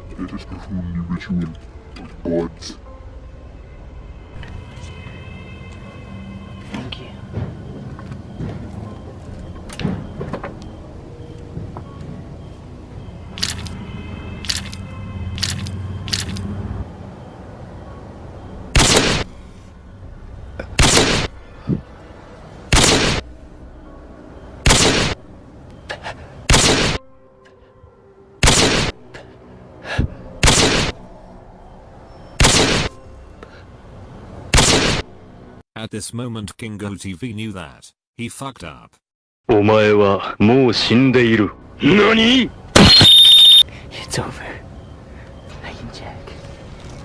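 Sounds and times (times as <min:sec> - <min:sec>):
short clicks: 0:15.4 - 0:16.5
loud sharp bangs: 0:18.7 - 0:19.3, 0:20.8 - 0:21.4, 0:22.7 - 0:23.3, 0:24.6 - 0:25.2, 0:26.5 - 0:27.0, 0:28.4 - 0:29.0, 0:30.4 - 0:31.0, 0:32.4 - 0:33.0, 0:34.5 - 0:35.1, 0:42.8 - 0:43.6.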